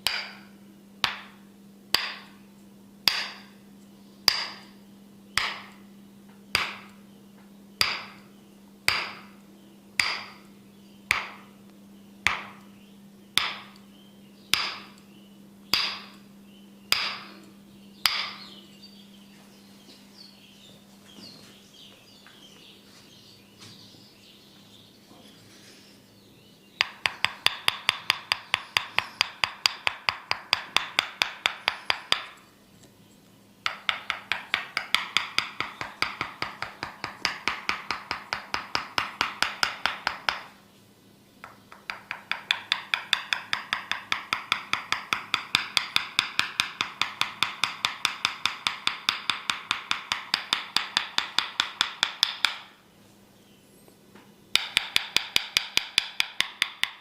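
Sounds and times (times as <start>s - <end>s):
wooden mallet tapping wooden wedge: 0.0s - 2.4s, 3.0s - 3.5s, 4.3s - 4.7s, 5.4s - 5.8s, 6.5s - 7.0s, 7.8s - 8.3s, 8.9s - 9.4s, 10.0s - 10.5s, 11.1s - 11.5s, 12.2s - 12.6s, 13.4s - 13.8s, 14.5s - 15.0s, 15.7s - 16.2s, 16.9s - 17.4s, 18.0s - 18.5s, 26.8s - 32.4s, 33.6s - 40.6s, 41.4s - 52.8s, 54.5s - 57.0s.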